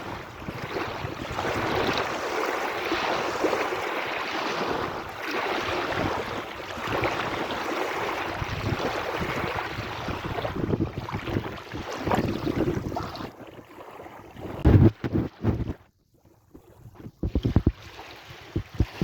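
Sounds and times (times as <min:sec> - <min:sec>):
sea waves washing: 0:00.0 - 0:15.7, 0:16.8 - 0:19.0
wind rumbling on microphone: 0:00.0 - 0:19.0.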